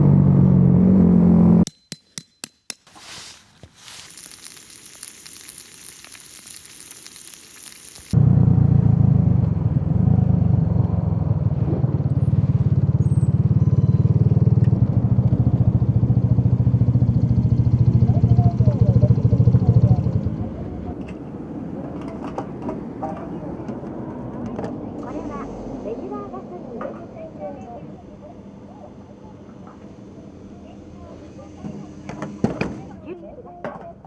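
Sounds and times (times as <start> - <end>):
faint sizzling hiss: 2.9 - 8.2
motorcycle engine idling: 13.6 - 21.0.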